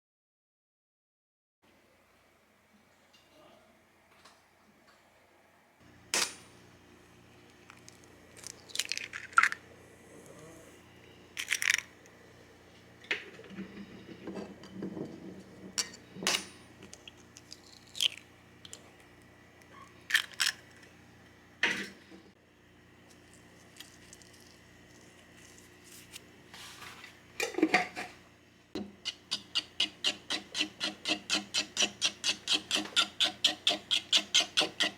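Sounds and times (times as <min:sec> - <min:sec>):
steady low hum: 0:05.3 - 0:34.9.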